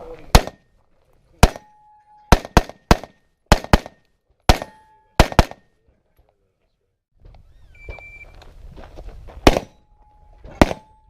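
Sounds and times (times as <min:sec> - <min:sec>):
pistol shots: 0:00.3 - 0:00.6, 0:01.4 - 0:05.7, 0:09.4 - 0:09.8, 0:10.5 - 0:11.0
short ringing tone: 0:01.6 - 0:02.3, 0:09.8 - 0:11.0.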